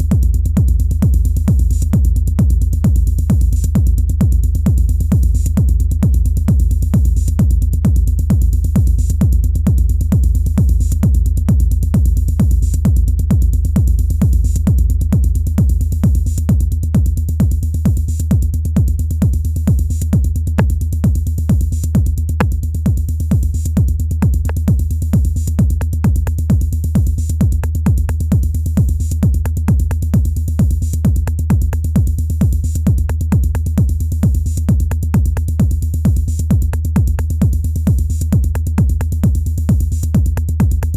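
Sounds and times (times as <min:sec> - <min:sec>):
deep bass: 0:00.0 - 0:40.9
heavy kick drum pulse: 0:00.0 - 0:40.9.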